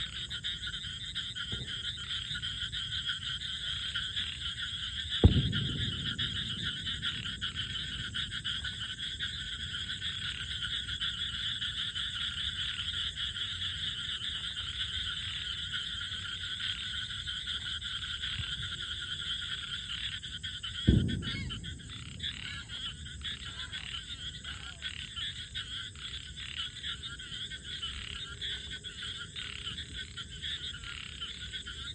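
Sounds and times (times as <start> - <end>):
chorus of frogs calling: 0.0 - 31.9
dull thumps: 5.2 - 8.8, 20.9 - 23.0.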